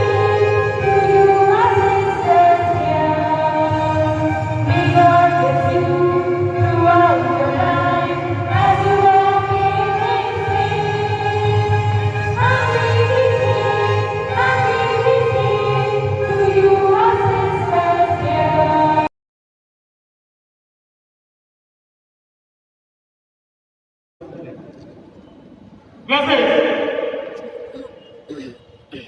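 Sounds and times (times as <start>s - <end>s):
choir singing long notes: 0.0s - 19.1s
low steady accompaniment: 0.0s - 19.1s.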